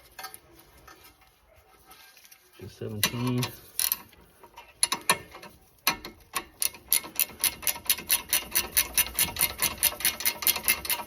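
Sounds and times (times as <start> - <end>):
ratchet wrench clicking: 5.9 - 11.0.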